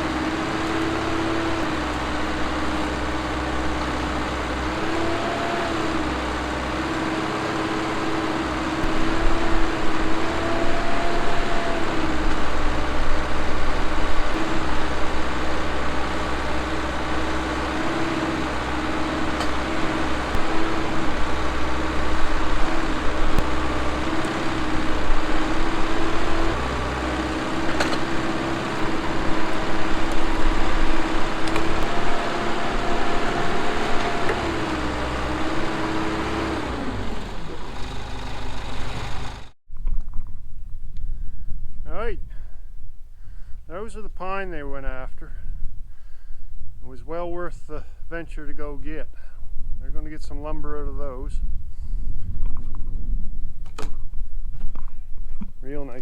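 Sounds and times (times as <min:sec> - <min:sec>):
diesel engine drone: 0:00.0 - 0:39.6.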